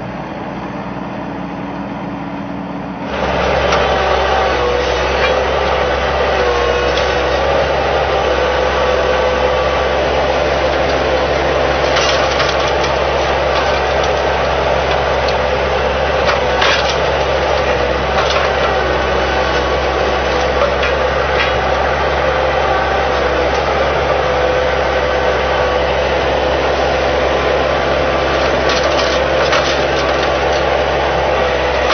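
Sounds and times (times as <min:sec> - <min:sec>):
loader engine running: 0:00.0 - 0:31.9
metal attachment clanks and scrapes: 0:10.7 - 0:15.5, 0:16.2 - 0:21.9, 0:28.3 - 0:30.7, 0:31.7 - 0:31.9.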